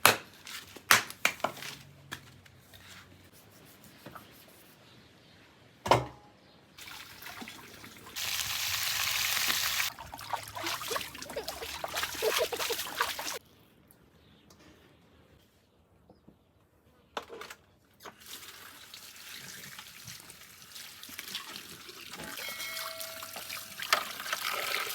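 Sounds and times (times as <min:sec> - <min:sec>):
water pouring: 0:06.8 - 0:13.4, 0:18.2 - 0:24.9
water splashing and dripping: 0:06.8 - 0:13.4, 0:18.1 - 0:24.9.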